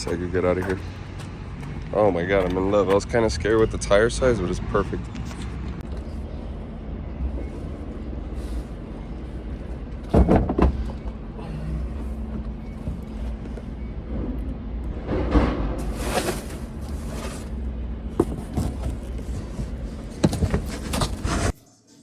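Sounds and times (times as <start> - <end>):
vehicle engine rumble: 0.0 - 21.3.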